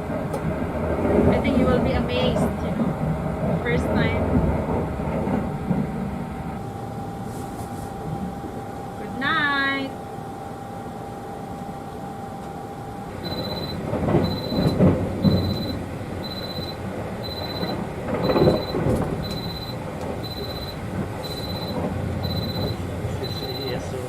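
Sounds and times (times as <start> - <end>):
rustling noise: 7.2 - 8.2
electronic alarm beeping: 13.2 - 23.8.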